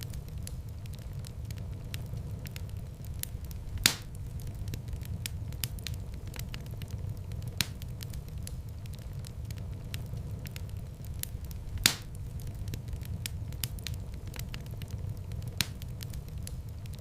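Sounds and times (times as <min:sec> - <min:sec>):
wood fire crackling: 0:00.0 - 0:17.0
loud pop of fire: 0:03.2 - 0:08.3, 0:11.2 - 0:16.3.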